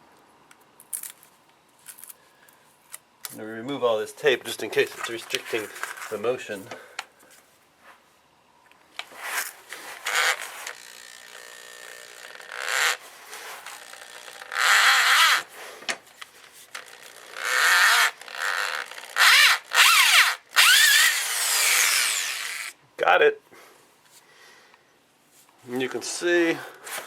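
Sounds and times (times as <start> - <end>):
cordless drill bursts: 10.0 - 13.0, 13.7 - 15.5, 16.8 - 22.7.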